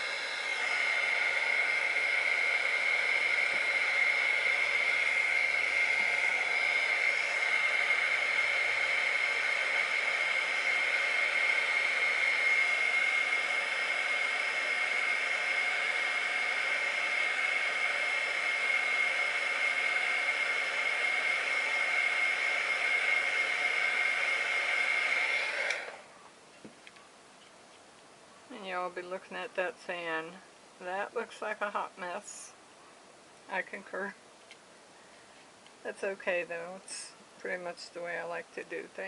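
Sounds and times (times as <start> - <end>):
heat tool fan blowing with whine: 0.0 - 26.2.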